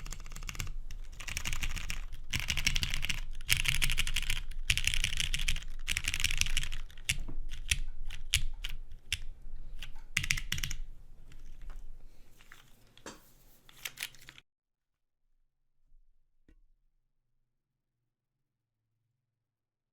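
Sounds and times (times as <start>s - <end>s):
mechanical keyboard typing: 0.0s - 11.8s, 13.7s - 14.4s.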